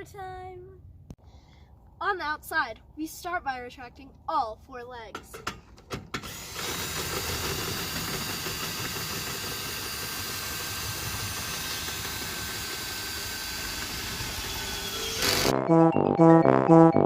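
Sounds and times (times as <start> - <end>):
electric motor whining: 6.2 - 15.5.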